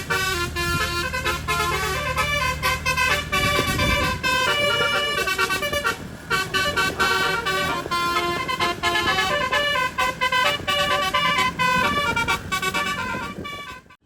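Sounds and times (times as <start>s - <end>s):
bus horn melody: 0.0s - 14.0s
low vehicle rumble: 0.0s - 14.0s.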